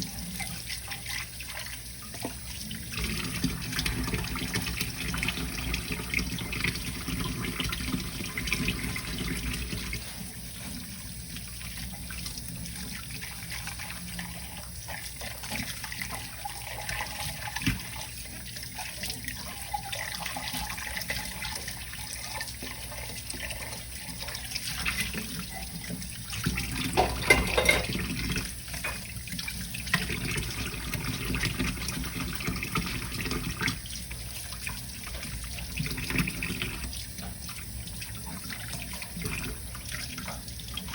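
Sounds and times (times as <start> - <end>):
tap water running into sink: 0.0 - 40.9
dishes clicking and knocking: 26.9 - 28.0.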